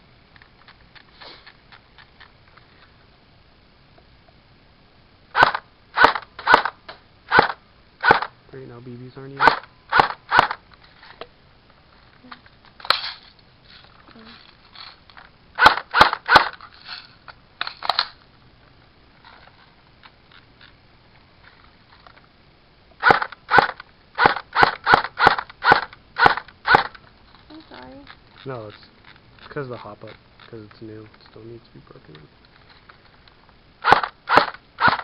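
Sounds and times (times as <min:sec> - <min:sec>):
airsoft rifle shots: 0:05.3 - 0:08.4, 0:09.3 - 0:10.6, 0:15.6 - 0:16.6, 0:23.0 - 0:27.0, 0:33.8 - 0:35.0.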